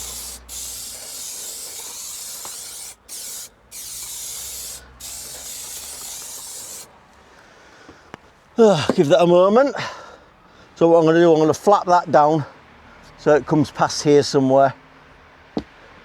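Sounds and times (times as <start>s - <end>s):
aerosol spray hissing: 0.0s - 6.9s.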